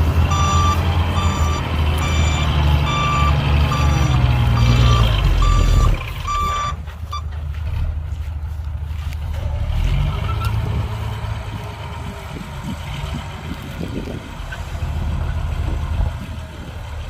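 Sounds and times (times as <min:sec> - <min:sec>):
diesel engine running: 0:00.0 - 0:17.0
reversing alarm beeping: 0:00.3 - 0:07.3.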